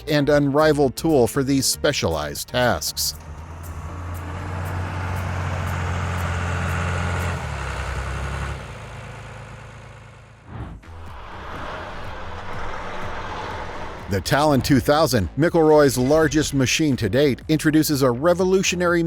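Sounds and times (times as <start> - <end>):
heavy machine engine droning: 2.5 - 15.1.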